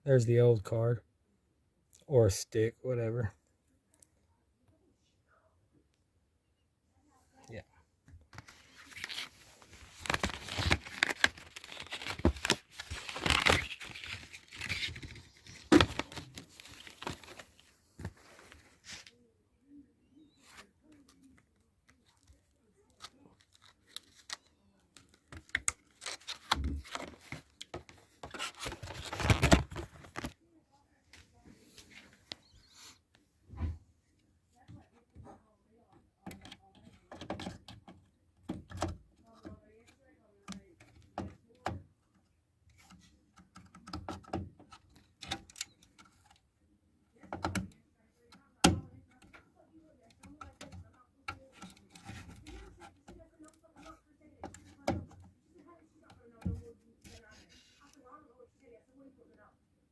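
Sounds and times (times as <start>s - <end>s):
plastic computer parts clicking: 9.9s - 17.4s, 22.2s - 30.3s, 36.2s - 39.6s, 42.7s - 46.4s, 47.2s - 55.3s.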